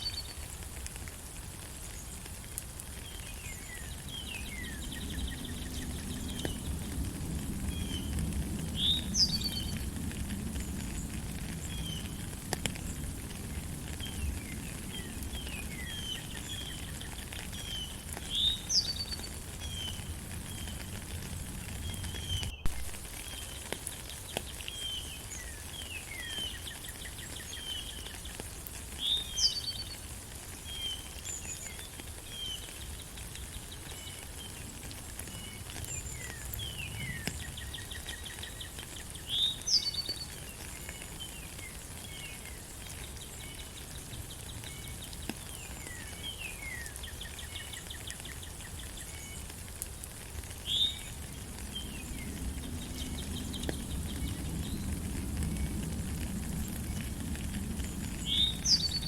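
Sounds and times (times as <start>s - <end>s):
rain falling in a forest: 0.0s - 59.0s
songbirds chirping: 1.7s - 59.0s.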